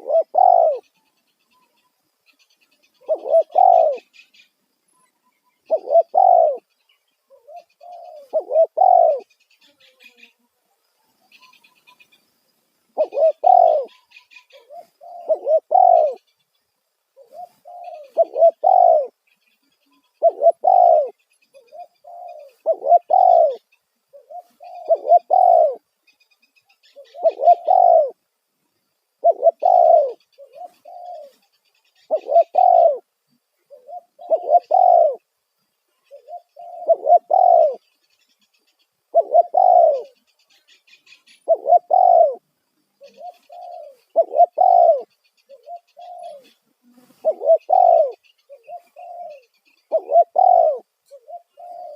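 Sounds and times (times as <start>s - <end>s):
dove cooing: 0.0s - 1.8s, 3.0s - 4.2s, 5.7s - 6.7s, 7.3s - 10.3s, 13.0s - 16.2s, 17.2s - 19.2s, 20.1s - 25.8s, 26.8s - 28.2s, 29.2s - 33.1s, 33.7s - 35.2s, 36.0s - 37.8s, 39.1s - 51.9s
small birds chirping: 0.0s - 51.9s.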